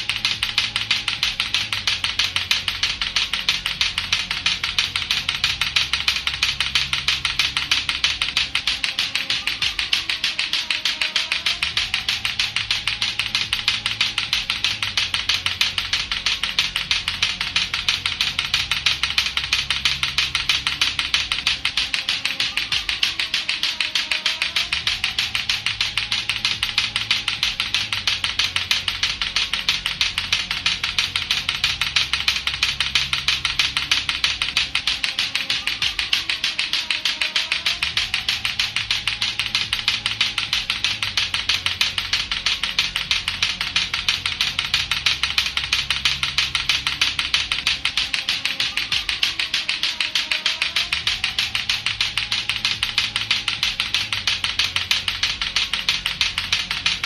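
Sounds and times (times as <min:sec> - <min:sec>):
clacker balls clacking: 0:00.0 - 0:57.0.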